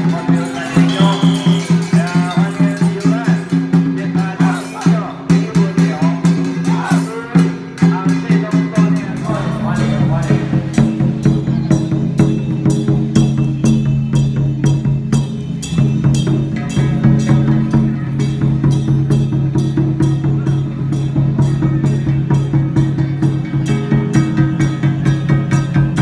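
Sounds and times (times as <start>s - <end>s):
steady drumbeat: 0.0s - 26.0s
held low notes: 6.2s - 26.0s.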